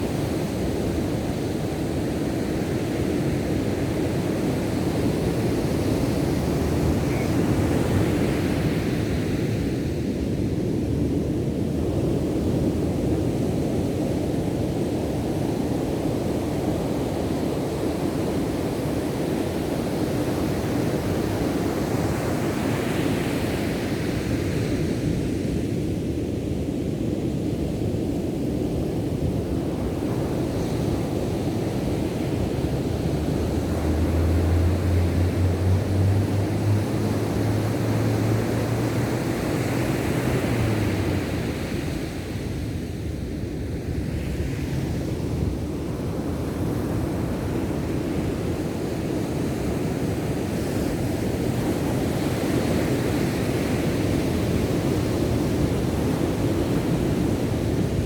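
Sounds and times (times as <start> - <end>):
ocean surf rushing: 30.3 - 49.6.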